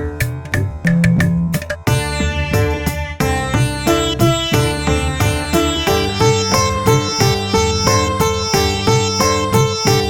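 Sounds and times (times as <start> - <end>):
steady bass beat: 0.0 - 10.0
quick melody of struck notes: 3.6 - 10.0.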